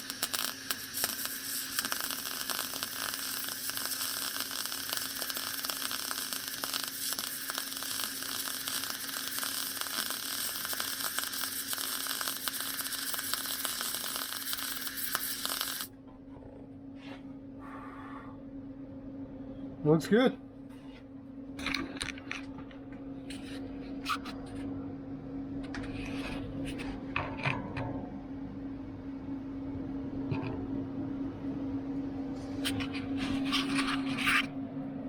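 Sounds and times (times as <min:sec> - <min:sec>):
welder arc crackling: 0:00.0 - 0:16.0
steady low hum: 0:00.0 - 0:35.0.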